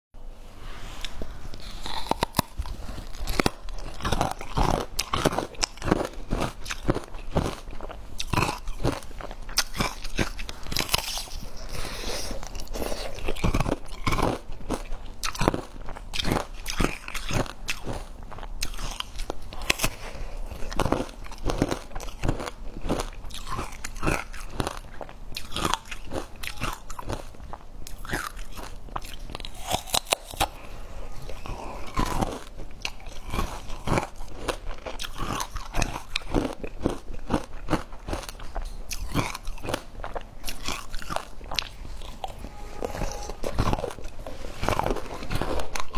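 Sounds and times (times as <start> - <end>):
crunchy cookie chewing: 1.0 - 30.6, 31.2 - 45.9.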